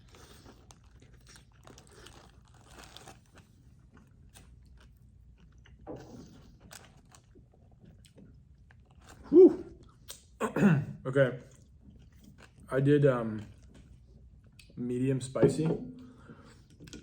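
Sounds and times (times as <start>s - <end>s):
crunchy chewing: 0.0s - 10.3s, 11.4s - 12.7s.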